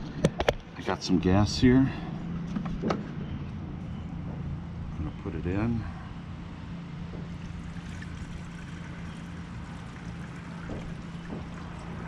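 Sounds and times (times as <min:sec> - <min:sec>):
gasoline pouring into tank: 0:07.5 - 0:12.0.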